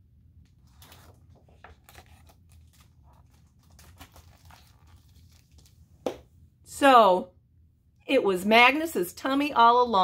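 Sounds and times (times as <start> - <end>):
paper rustling and crinkling: 0.5 - 5.8.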